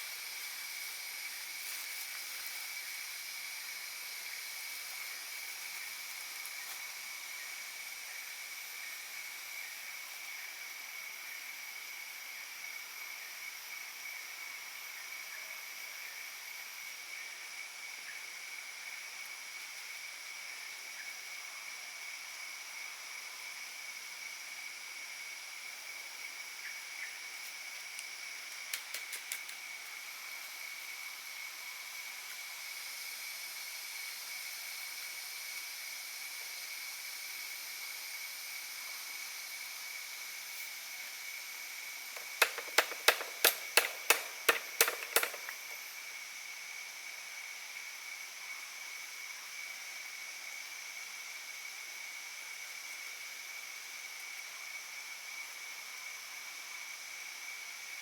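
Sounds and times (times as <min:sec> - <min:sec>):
forest insects droning: 0:00.0 - 0:58.0
sharp clicks or knocks: 0:42.2 - 0:45.8.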